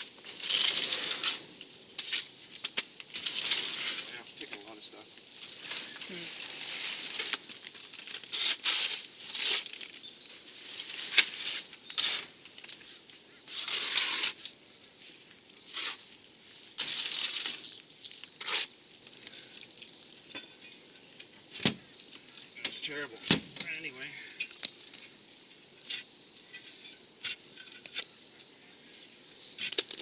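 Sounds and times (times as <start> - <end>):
hoe scraping through mortar mix: 13.5 - 14.4.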